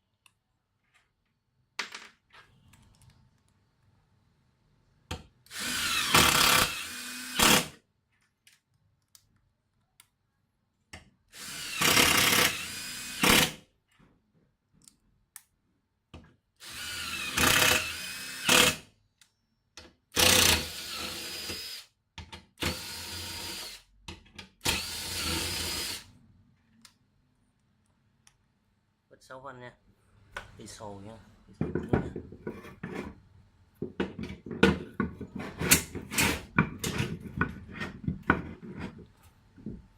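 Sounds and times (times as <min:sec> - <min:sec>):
cordless impact driver running: 0:11.4 - 0:13.5.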